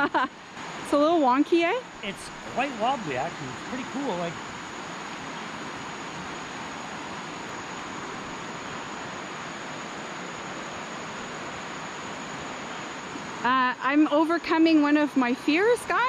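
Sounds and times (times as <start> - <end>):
faint high whine: 0.0 - 16.0
waterfall rushing: 1.8 - 13.4.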